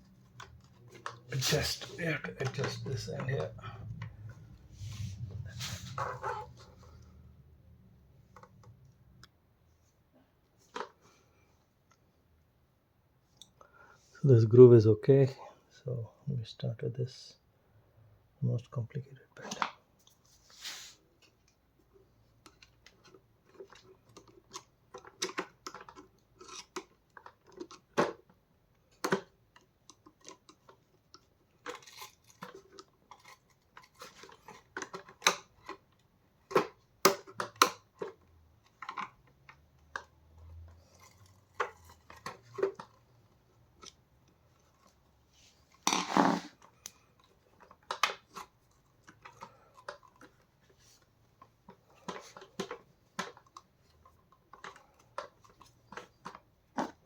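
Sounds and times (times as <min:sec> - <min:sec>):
plastic parts clicking and scraping: 0:00.0 - 0:04.6, 0:10.6 - 0:11.3, 0:19.4 - 0:20.2, 0:21.2 - 0:57.0
plastic clatter: 0:00.2 - 0:04.4, 0:22.4 - 0:45.0, 0:45.7 - 0:57.0.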